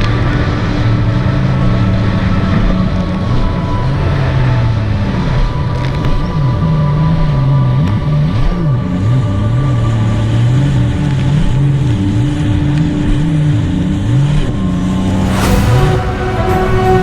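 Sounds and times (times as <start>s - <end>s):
rush of noise: 14.6s - 17.0s.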